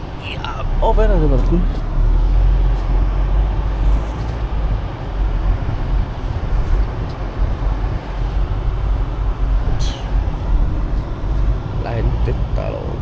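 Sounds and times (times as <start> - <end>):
vehicle engine and tyre rumble: 0.0 - 13.0.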